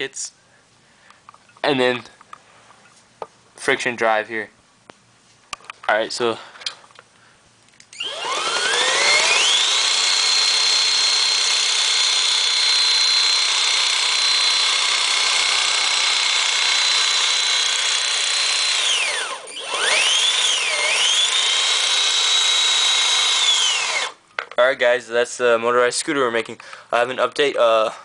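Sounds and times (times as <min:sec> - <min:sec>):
cordless drill motor whining: 0:07.9 - 0:24.2.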